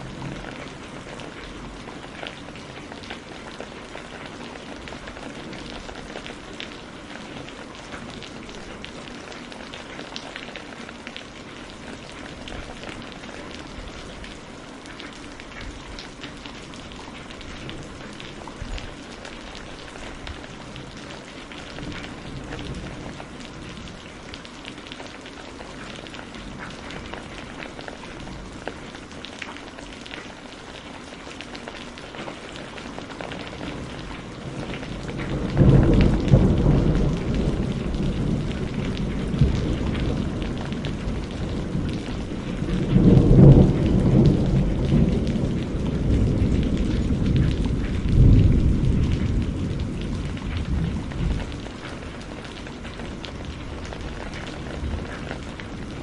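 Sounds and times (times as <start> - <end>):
steady rain falling: 0.0 - 56.0
deep rumble of thunder: 17.2 - 24.3, 33.2 - 56.0.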